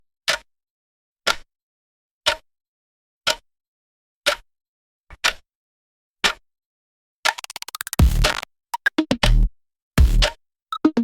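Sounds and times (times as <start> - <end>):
clock ticking: 7.3 - 11.0.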